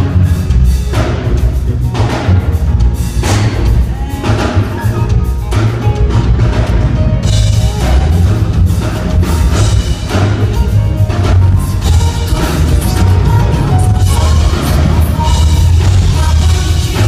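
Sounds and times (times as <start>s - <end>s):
band playing loud music: 0.0s - 17.0s.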